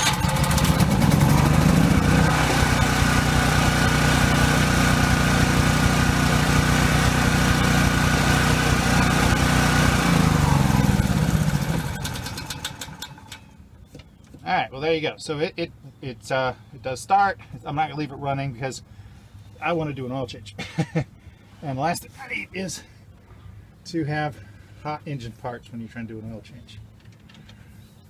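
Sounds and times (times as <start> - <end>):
generator running: 0.0 - 13.7.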